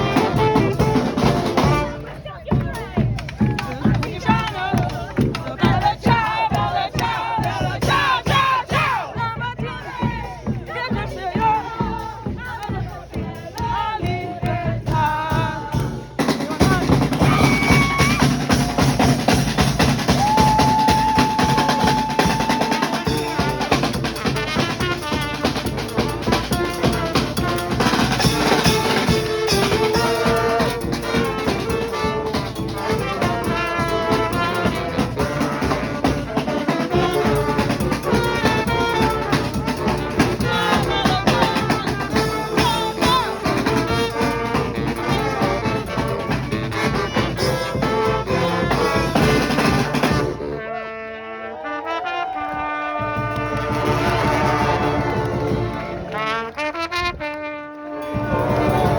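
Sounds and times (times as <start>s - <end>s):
drum kit: 0.0s - 2.0s, 14.5s - 50.6s, 58.0s - 58.9s
brass band playing: 0.0s - 58.9s.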